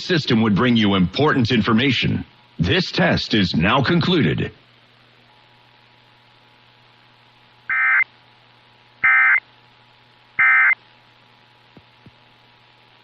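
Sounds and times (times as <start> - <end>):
low radio hiss and hum: 0.0 - 13.0
digital data tone bursts: 7.7 - 8.1, 9.0 - 9.4, 10.4 - 10.8.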